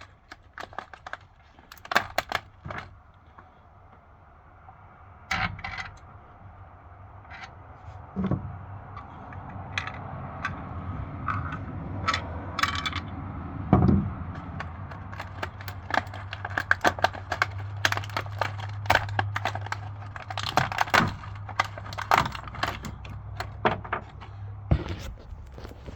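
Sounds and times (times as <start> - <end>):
quick clicks and light knocks: 0.0 - 3.5, 14.4 - 25.9.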